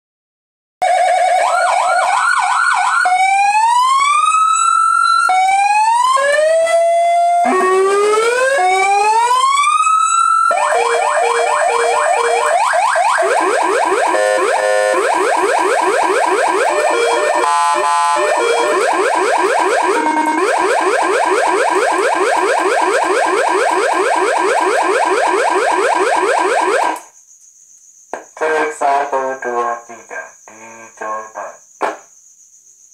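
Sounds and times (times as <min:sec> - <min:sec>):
electronic siren: 0:00.8 - 0:27.1.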